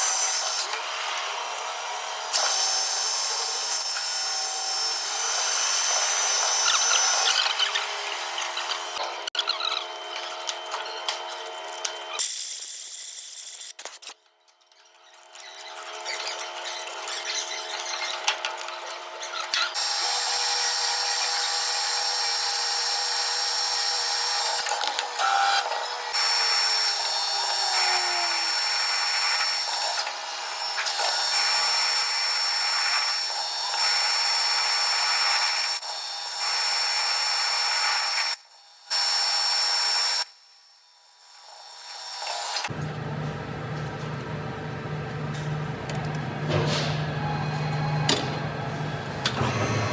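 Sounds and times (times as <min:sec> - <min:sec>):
metal lathe cutting: 0:19.8 - 0:32.9, 0:42.4 - 0:49.9
high machine whine: 0:42.6 - 0:49.9.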